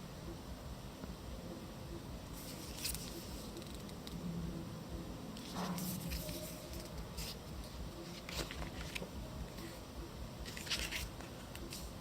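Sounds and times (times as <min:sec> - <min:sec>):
packaging rustling and crinkling: 0:10.4 - 0:11.8.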